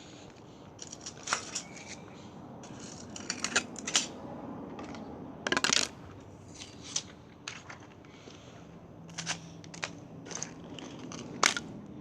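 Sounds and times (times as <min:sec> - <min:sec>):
broken phone pieces clicking and rattling: 0:00.8 - 0:02.0, 0:02.6 - 0:04.1, 0:04.7 - 0:05.9, 0:09.1 - 0:11.7.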